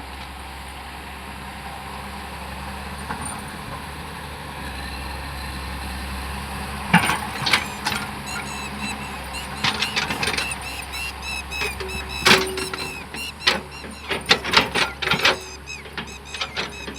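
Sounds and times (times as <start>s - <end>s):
excavator diesel engine running: 7.1s - 16.9s.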